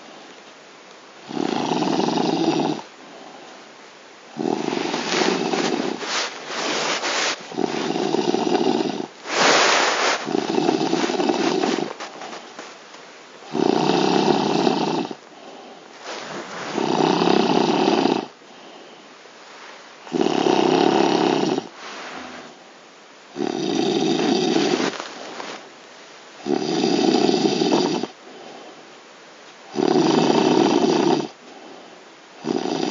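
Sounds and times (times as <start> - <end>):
man snoring loudly: 1.3 - 2.8, 4.4 - 5.6, 7.5 - 9.1, 13.5 - 15.2, 16.8 - 18.3, 23.4 - 24.7, 26.4 - 28.1, 29.7 - 31.3, 32.4 - 32.9
quiet breathing: 2.8 - 12.9, 14.2 - 22.8, 28.0 - 29.1, 30.4 - 32.2.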